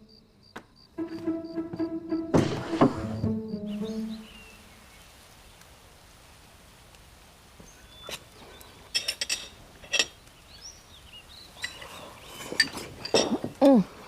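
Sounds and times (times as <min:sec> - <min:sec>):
birds chirping faintly: 0:03.1 - 0:06.1, 0:07.5 - 0:14.0
dishes clinking: 0:09.0 - 0:10.2, 0:11.6 - 0:13.6.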